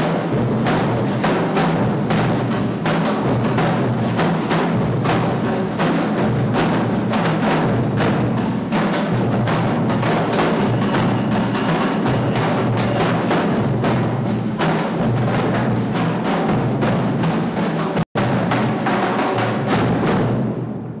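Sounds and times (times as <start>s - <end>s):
percussion group drumming: 0.0s - 21.0s.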